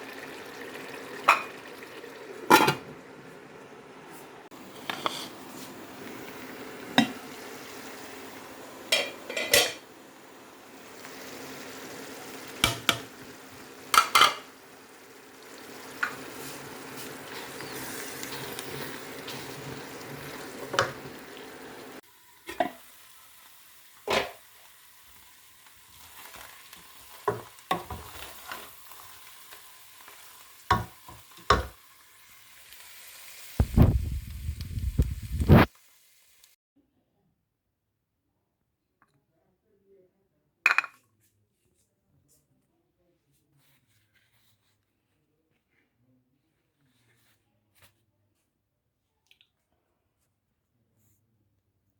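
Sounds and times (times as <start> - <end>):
food sizzling in a pot: 0.0 - 36.6
spoon stirring and knocking on pot: 6.8 - 7.3, 8.9 - 9.8, 12.5 - 13.2, 13.9 - 14.5, 15.9 - 21.2, 27.1 - 28.7, 30.7 - 31.8.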